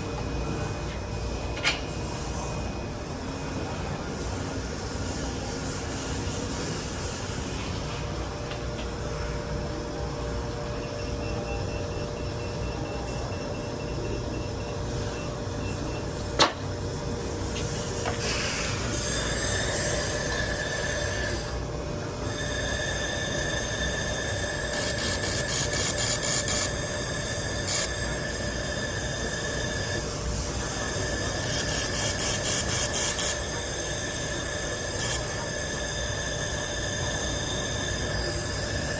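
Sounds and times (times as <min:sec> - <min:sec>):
laser welder high whine: 0:10.0 - 0:38.9
machine hum: 0:18.8 - 0:38.9.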